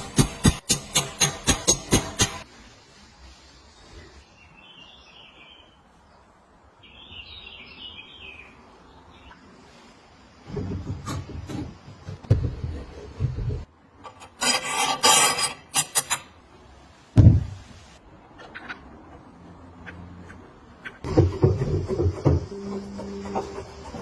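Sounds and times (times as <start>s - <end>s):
harsh rasping scraping strokes: 12.8s - 16.3s
heavy thump: 17.2s - 17.6s.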